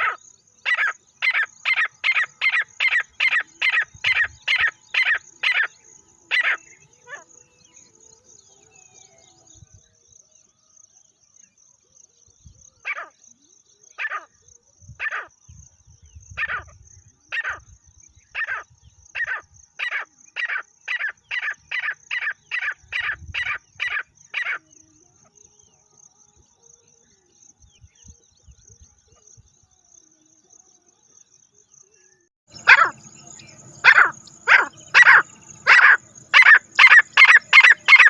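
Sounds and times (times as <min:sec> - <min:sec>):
francolin calling: 0:00.0 - 0:09.6, 0:32.5 - 0:38.0.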